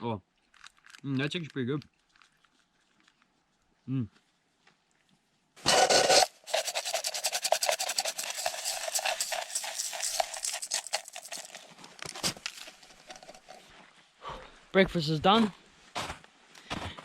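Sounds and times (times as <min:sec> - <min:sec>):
spoon scraping a cup: 0:05.6 - 0:13.7.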